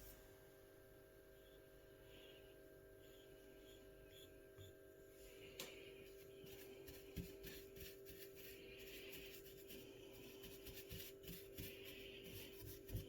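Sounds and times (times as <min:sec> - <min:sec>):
steady low hum: 0:00.0 - 0:13.0
faint rubbing strokes: 0:05.1 - 0:13.0.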